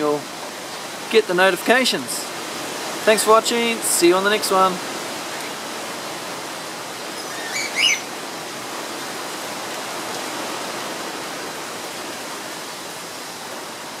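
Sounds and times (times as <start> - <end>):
bird chirps: 7.1 - 8.1.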